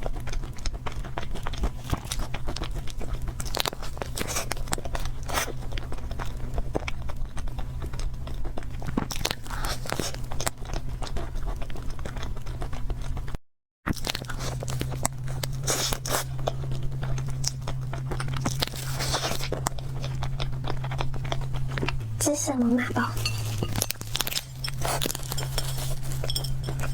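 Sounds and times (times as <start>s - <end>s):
chewing and biting: 0.0s - 22.2s, 23.2s - 26.9s
steady low hum: 14.0s - 26.9s.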